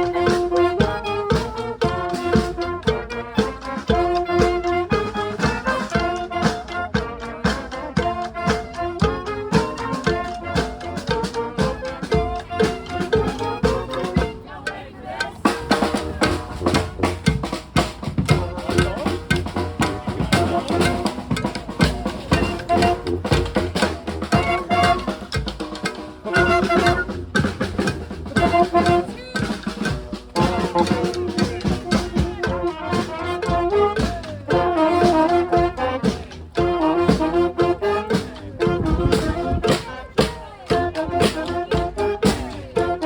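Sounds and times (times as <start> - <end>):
snare and bass drums: 0.0 - 14.5, 15.1 - 43.0
brass horns holding notes: 0.0 - 43.0.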